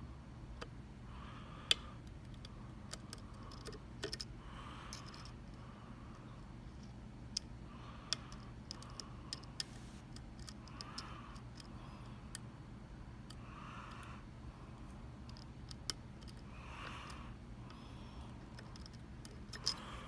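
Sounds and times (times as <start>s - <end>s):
lock pick clicking in lock: 2.4s - 4.3s.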